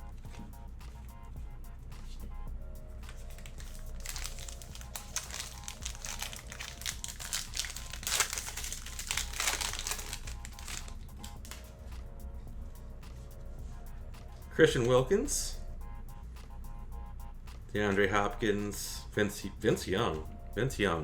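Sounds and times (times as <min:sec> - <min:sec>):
faint background music: 0:00.0 - 0:21.0
wrapper crinkling and tearing: 0:03.1 - 0:11.7.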